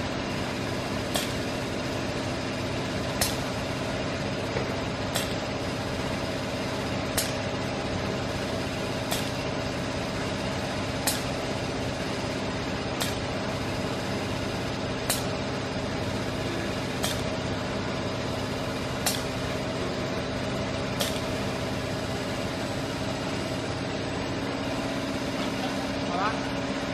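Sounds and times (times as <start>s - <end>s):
machine hum: 0.0s - 26.9s.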